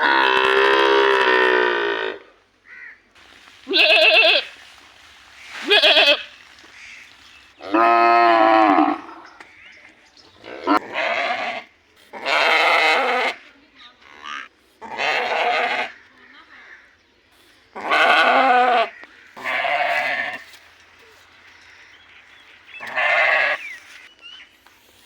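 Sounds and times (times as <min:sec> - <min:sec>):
livestock bleating: 0:03.7 - 0:04.6, 0:05.6 - 0:06.3, 0:10.4 - 0:13.4, 0:14.8 - 0:16.0, 0:17.8 - 0:20.5, 0:22.8 - 0:23.7.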